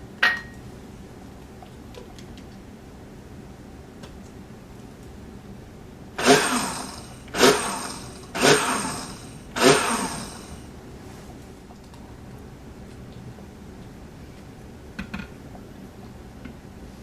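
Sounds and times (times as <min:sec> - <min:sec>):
electric blender pulsing: 0:06.2 - 0:10.6.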